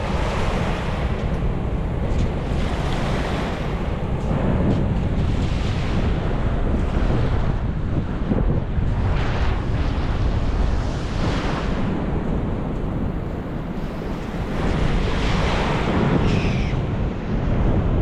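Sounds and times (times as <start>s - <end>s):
surf washing ashore: 0.0s - 18.0s
wind buffeting microphone: 0.0s - 18.0s.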